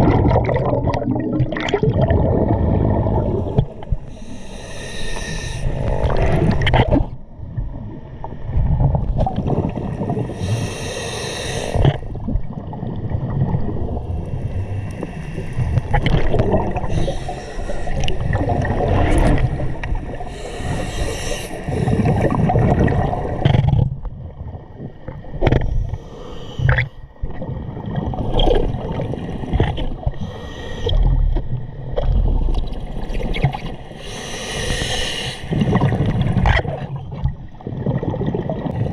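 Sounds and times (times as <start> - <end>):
bubbles gurgling on exhalation: 0.0 - 4.1, 5.8 - 10.4, 15.6 - 17.1, 18.0 - 20.3, 21.8 - 25.8, 35.5 - 38.9
regulator hissing inhalation: 4.1 - 6.0, 10.2 - 12.0, 16.8 - 18.2, 20.2 - 22.4, 26.0 - 26.7, 34.0 - 35.6.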